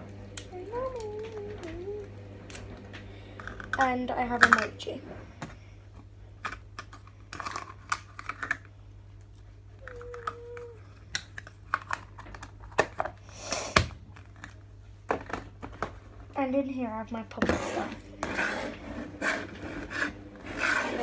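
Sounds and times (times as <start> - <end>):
plastic toys clicking and tapping: 6.4 - 8.8, 9.8 - 13.2.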